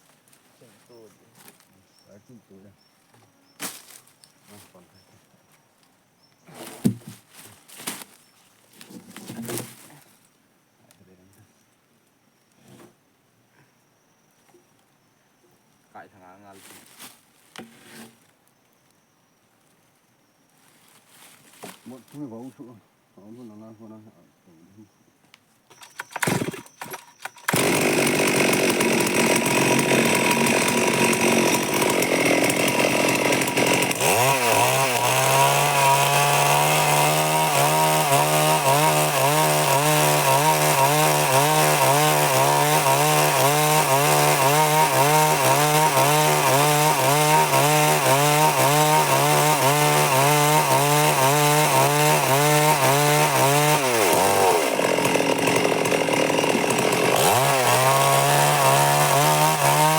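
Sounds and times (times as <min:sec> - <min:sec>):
chainsaw cutting wood: 0:25.7 - 0:59.9.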